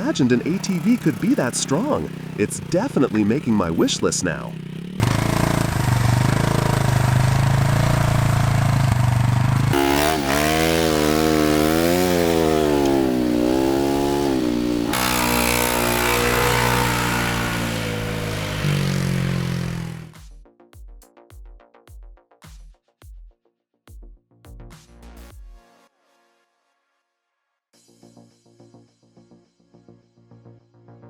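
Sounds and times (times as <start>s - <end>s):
small engine running: 0.0s - 20.2s.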